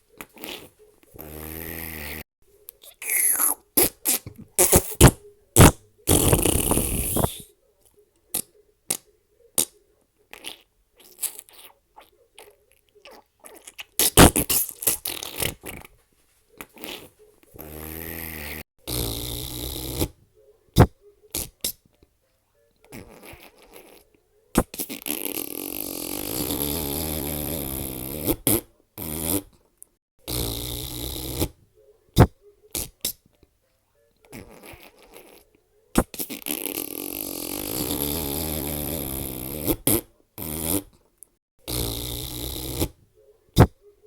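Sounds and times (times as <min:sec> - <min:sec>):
fart sound effects: 0:00.4 - 0:02.2, 0:03.0 - 0:07.5, 0:13.6 - 0:15.9, 0:16.8 - 0:20.2, 0:24.6 - 0:29.5, 0:30.3 - 0:31.6, 0:36.0 - 0:40.9, 0:41.7 - 0:43.0, 0:43.6 - 0:43.8.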